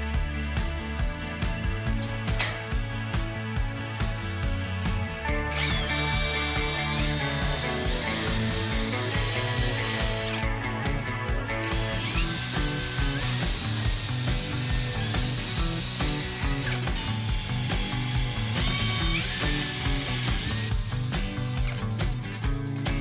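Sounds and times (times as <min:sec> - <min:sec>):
background music: 0:00.0 - 0:23.0
power tool whining: 0:05.2 - 0:23.0
rapid clicking: 0:05.5 - 0:10.6, 0:11.6 - 0:23.0.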